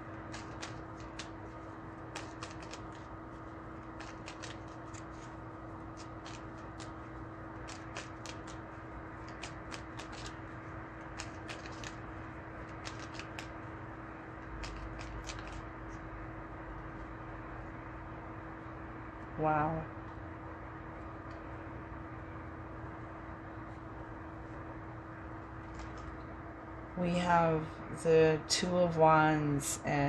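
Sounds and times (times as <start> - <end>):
steady low hum: 0.0 - 30.0
cards shuffling clicks: 0.2 - 3.2, 3.8 - 13.6, 14.4 - 16.0.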